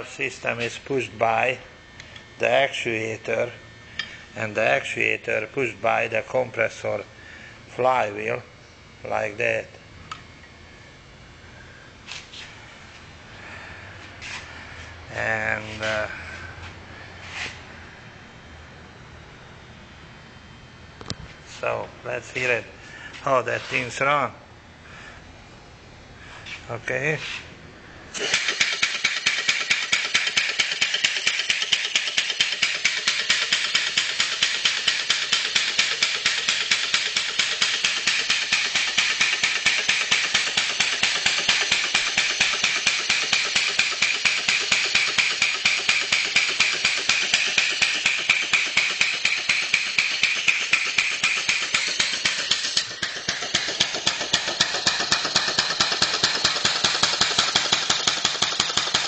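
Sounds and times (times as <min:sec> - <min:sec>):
engine exhaust puffs and valve clatter: 0:28.2 - 0:59.0.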